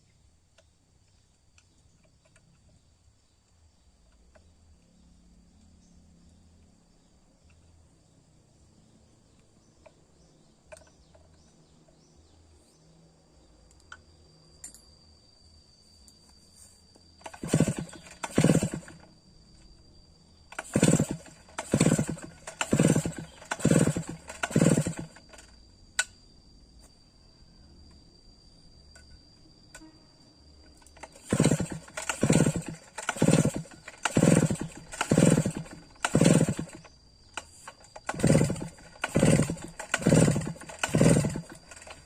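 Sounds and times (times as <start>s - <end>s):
crickets chirping: 0.0s - 42.0s
chainsaw pull-start cranking: 17.2s - 19.2s, 20.5s - 25.5s, 30.8s - 42.0s.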